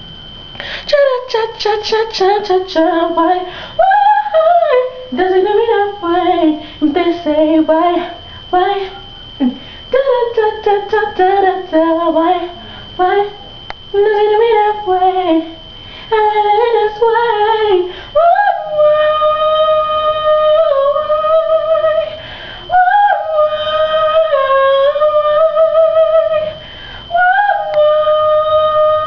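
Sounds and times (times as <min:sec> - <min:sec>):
woman singing without words: 0:00.4 - 0:29.0.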